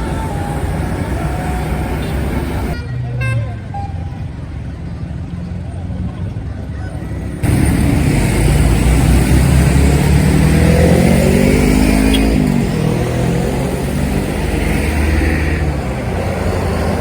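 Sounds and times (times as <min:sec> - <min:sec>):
large vehicle engine accelerating: 0:00.0 - 0:02.8, 0:04.0 - 0:17.0.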